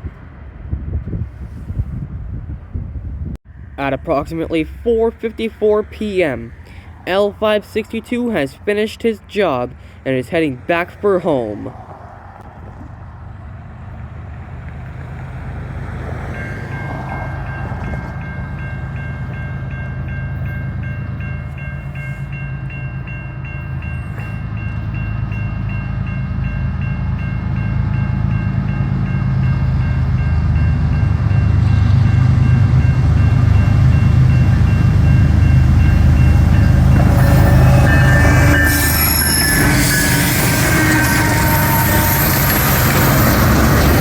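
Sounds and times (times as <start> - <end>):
diesel locomotive rumbling: 0.0 - 44.0
rapid high ringing: 18.6 - 44.0.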